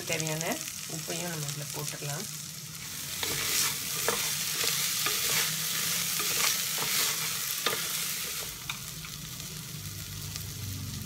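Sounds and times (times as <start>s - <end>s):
food sizzling in pot: 0.0s - 11.0s
spoon scraping pot: 3.1s - 8.7s.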